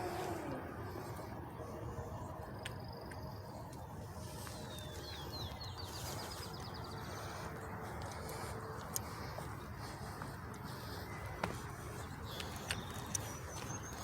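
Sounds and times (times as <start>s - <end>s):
small bird singing: 4.2s - 7.6s, 9.4s - 14.0s.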